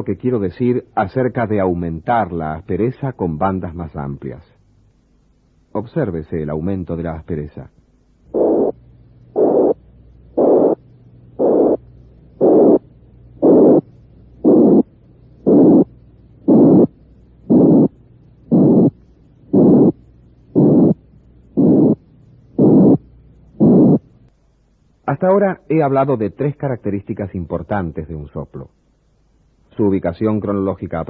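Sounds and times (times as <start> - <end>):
heart murmur noise bursts: 8.4 - 8.8, 9.4 - 9.8, 10.4 - 10.8, 11.4 - 11.8, 12.4 - 12.8, 13.4 - 13.8, 14.4 - 14.9, 15.5 - 15.9, 16.5 - 16.9, 17.5 - 20.0, 20.6 - 21.0, 21.6 - 22.0, 22.6 - 23.0, 23.6 - 24.0.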